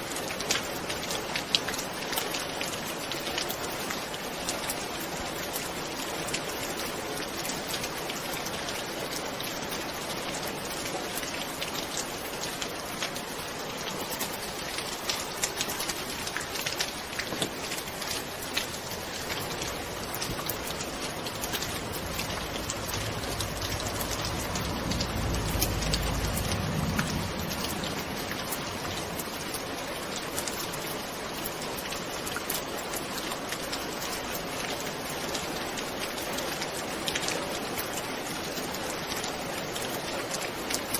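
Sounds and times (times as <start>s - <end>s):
heavy rain: 0.0s - 40.9s
distant thunder rumble: 19.9s - 29.5s.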